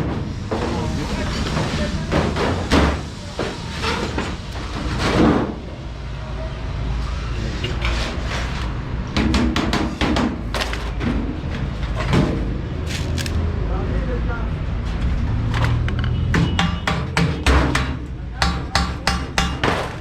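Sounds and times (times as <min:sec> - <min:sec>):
sheet metal being hammered: 0:16.4 - 0:20.0.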